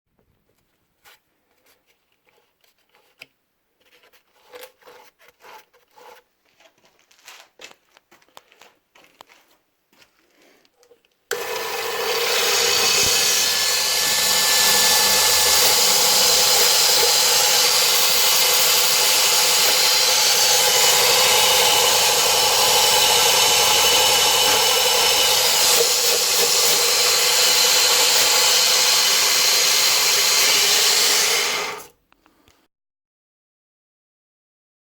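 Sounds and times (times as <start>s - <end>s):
belt sander running: 11.3s - 31.9s.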